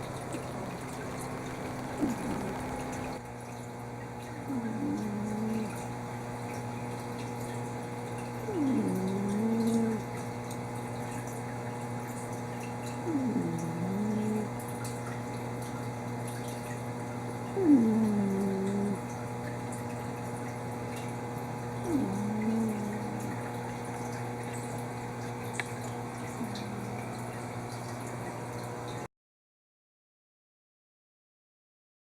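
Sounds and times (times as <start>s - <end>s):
steady low hum: 0.0s - 3.5s, 4.1s - 28.7s
cat snoring: 0.3s - 3.2s, 4.4s - 5.9s, 8.4s - 10.1s, 13.0s - 14.6s, 17.6s - 19.1s, 21.6s - 23.6s, 26.4s - 27.2s.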